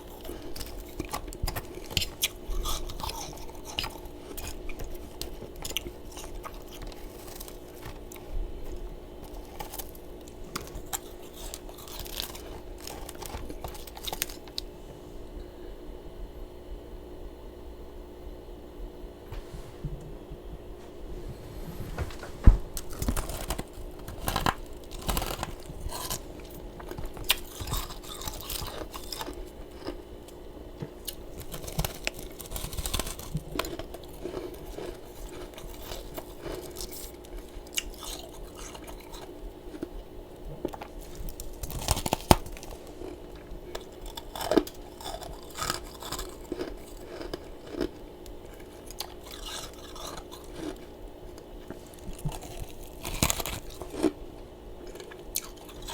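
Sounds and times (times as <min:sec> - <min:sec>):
steady low hum: 0:00.0 - 0:55.9
mouth crunching frost: 0:22.7 - 0:30.0.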